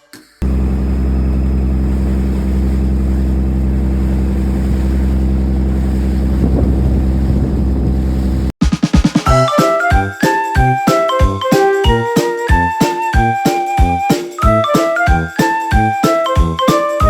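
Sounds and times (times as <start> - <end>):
boat engine droning: 0.4 - 8.5.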